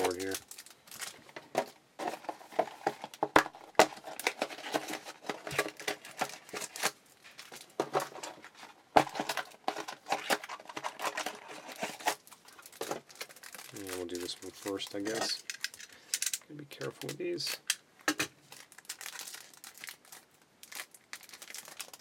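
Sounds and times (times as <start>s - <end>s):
packaging crinkling and rustling: 0.0s - 22.0s.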